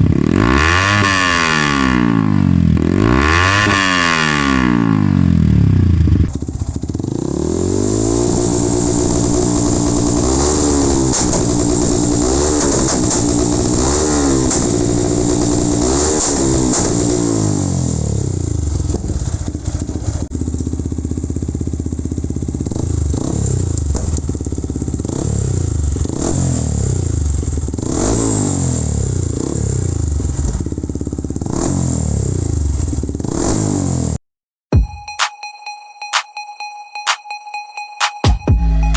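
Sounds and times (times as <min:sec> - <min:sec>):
motorcycle engine revving: 0:00.0 - 0:34.2
motorcycle throttle blips: 0:05.7 - 0:17.6, 0:18.2 - 0:28.2.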